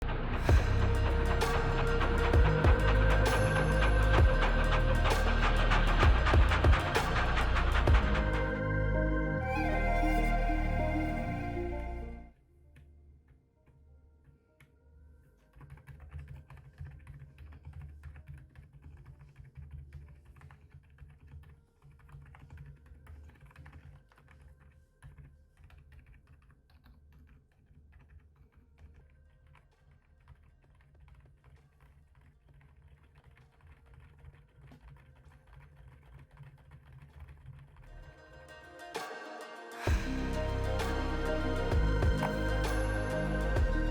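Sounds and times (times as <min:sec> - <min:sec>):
quiet keyboard typing: 0:15.5 - 0:37.9.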